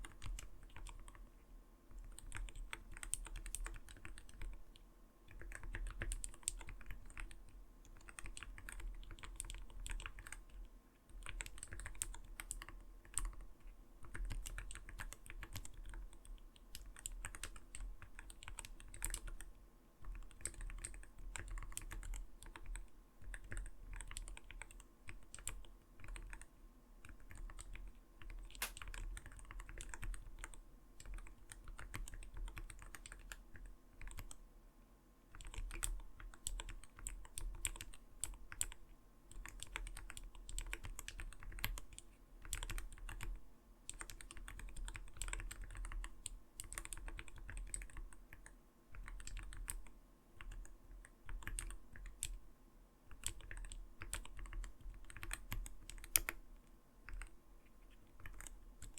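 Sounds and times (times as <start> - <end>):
mechanical keyboard typing: 0.0 - 1.2, 1.9 - 4.6, 5.3 - 13.4, 14.0 - 34.4, 35.3 - 52.4, 53.1 - 56.4, 57.0 - 57.4, 58.1 - 58.9.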